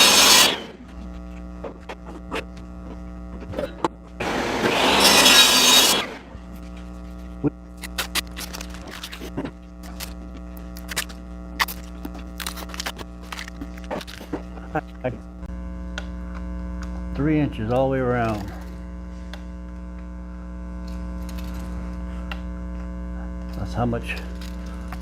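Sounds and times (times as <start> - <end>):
harsh rasping cut on plastic: 0.0 - 0.8, 4.2 - 6.3.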